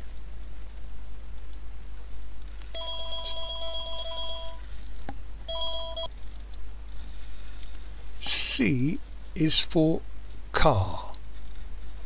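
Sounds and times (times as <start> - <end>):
telephone ringing: 2.8 - 4.7, 5.5 - 6.1.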